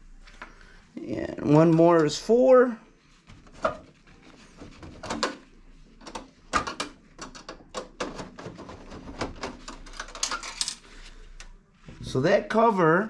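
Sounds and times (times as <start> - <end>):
clicks and knocks of metal cover: 6.0 - 8.6.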